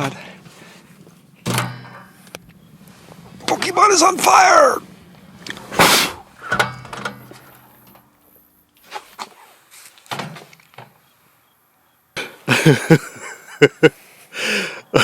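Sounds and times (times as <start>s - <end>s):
microwave oven clunks: 1.4s - 2.7s, 6.4s - 8.1s.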